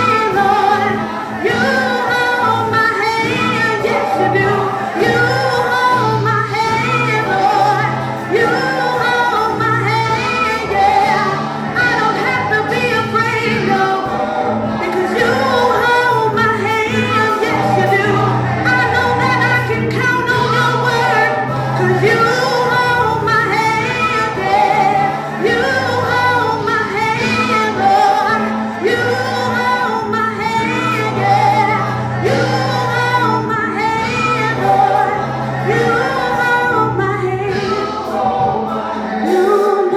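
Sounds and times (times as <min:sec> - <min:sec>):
gospel singers: 0:00.0 - 0:39.9
steady bass line: 0:00.0 - 0:39.9.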